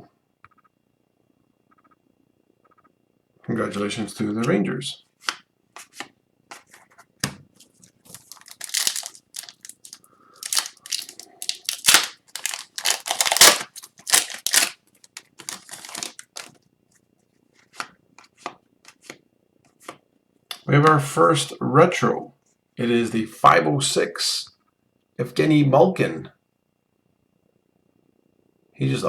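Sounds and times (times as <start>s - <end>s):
foil wrapper tearing and crinkling: 7.6s - 16.6s.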